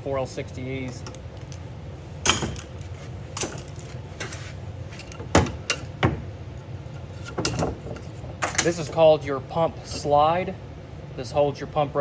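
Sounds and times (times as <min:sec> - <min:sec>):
steady low hum: 0:00.0 - 0:12.0
metal parts clicking and knocking: 0:00.9 - 0:02.8, 0:03.4 - 0:04.0, 0:07.2 - 0:08.8.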